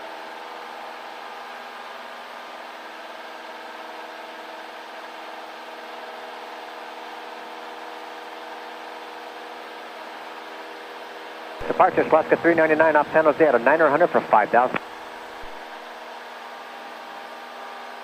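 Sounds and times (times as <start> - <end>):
aircraft engine and propeller drone: 0.2 - 18.0.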